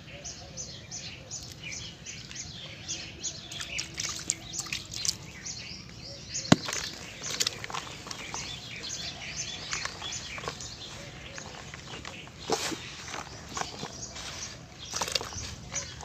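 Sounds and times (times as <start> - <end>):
birds chirping: 0.0 - 16.0
cement crumbling and crackling: 6.5 - 14.2.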